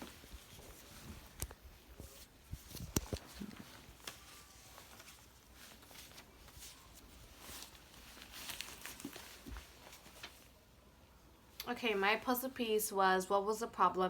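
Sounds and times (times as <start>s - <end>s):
faint rustling: 0.0s - 10.6s
light clicks and taps: 0.3s - 4.2s.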